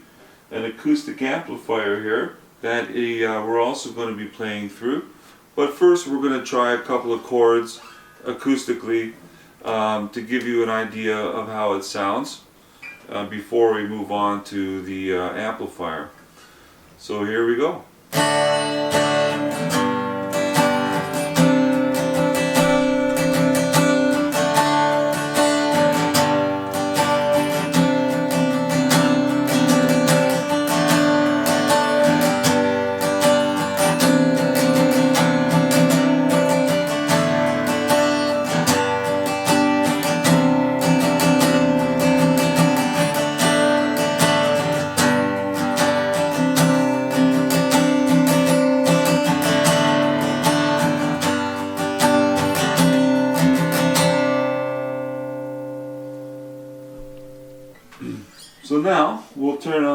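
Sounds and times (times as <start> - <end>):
acoustic guitar strumming chords: 17.9 - 58.5.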